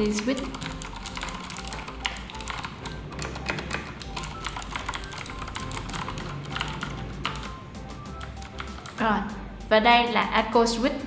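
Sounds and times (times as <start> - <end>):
clicky mechanical keyboard typing: 0.0 - 9.0.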